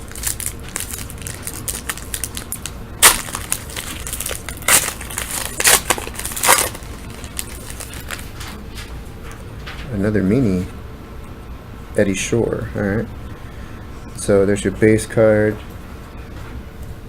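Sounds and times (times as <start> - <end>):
wrapper crinkling: 0.0 - 8.9
wrapper ripping: 0.0 - 8.9.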